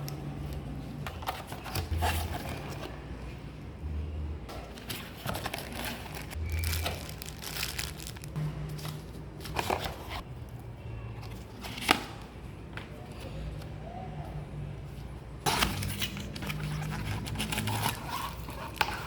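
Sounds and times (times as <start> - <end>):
packaging crinkling and rustling: 4.8 - 8.4.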